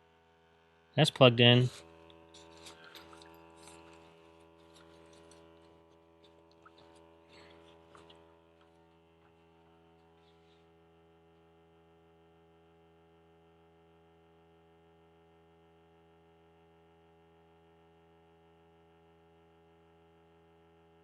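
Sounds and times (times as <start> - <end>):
faint electrical hum: 1.0 - 13.4.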